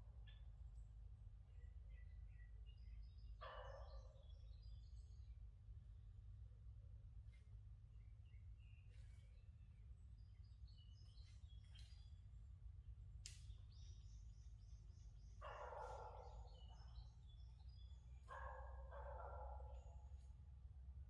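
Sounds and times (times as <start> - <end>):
small birds chirping: 8.0 - 20.3.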